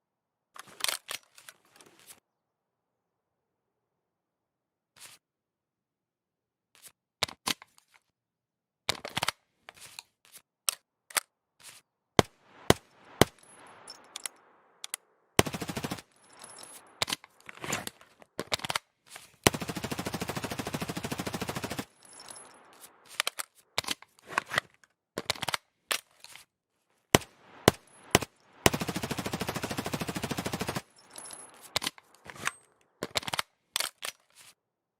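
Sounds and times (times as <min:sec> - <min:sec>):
submachine gun firing: 0:12.2 - 0:14.0, 0:15.4 - 0:17.8, 0:19.4 - 0:22.7, 0:27.1 - 0:31.8.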